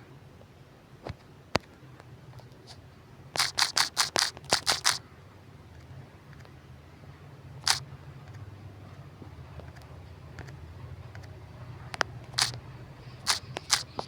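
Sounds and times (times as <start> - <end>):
faint low hum: 0.0 - 14.0
computer mouse clicks: 3.4 - 5.0, 7.6 - 8.4, 9.6 - 11.4, 12.0 - 12.6, 13.2 - 14.0.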